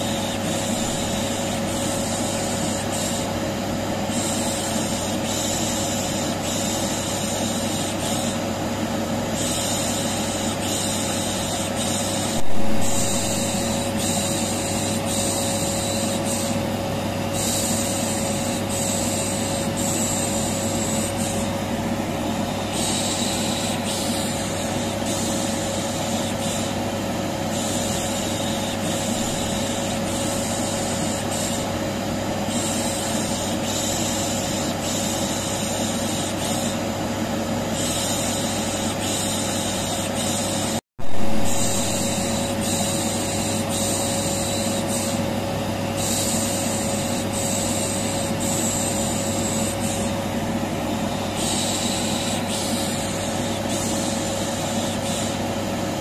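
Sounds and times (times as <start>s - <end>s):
vacuum cleaner running: 0.0s - 33.4s, 38.8s - 56.0s
loud bump: 12.4s - 14.0s.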